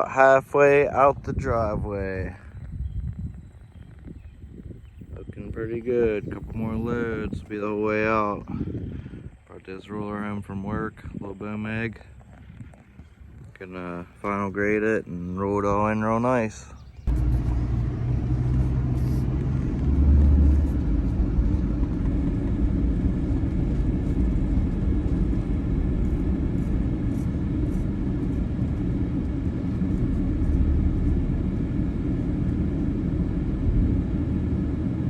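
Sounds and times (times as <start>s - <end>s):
heavy equipment engine rumbling: 11.8s - 35.0s.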